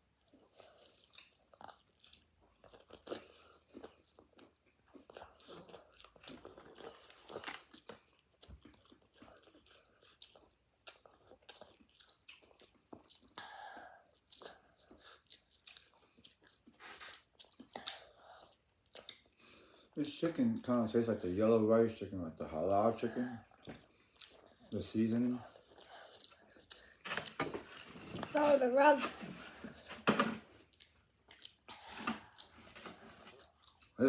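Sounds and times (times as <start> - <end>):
person chewing fried chicken: 0.0 - 20.3, 22.3 - 28.2, 30.5 - 34.0.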